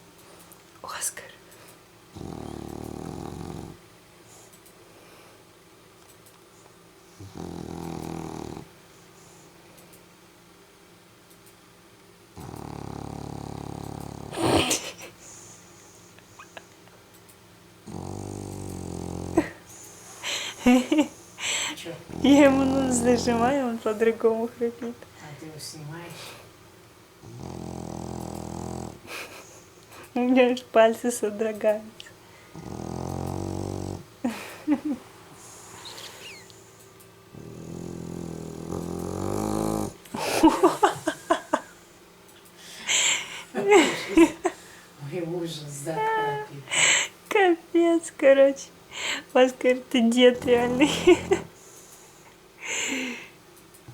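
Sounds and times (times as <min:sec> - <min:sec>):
dog snoring: 0:02.1 - 0:04.5, 0:07.1 - 0:09.5, 0:12.3 - 0:15.7, 0:17.8 - 0:21.4, 0:22.0 - 0:24.2, 0:27.2 - 0:29.6, 0:32.4 - 0:34.6, 0:35.2 - 0:41.6, 0:50.2 - 0:52.3.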